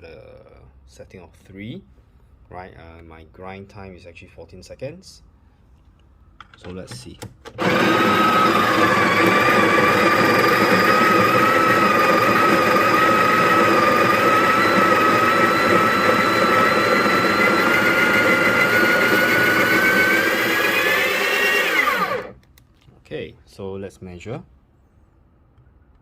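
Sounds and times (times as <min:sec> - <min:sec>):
coffee grinder whining: 0:07.6 - 0:22.4.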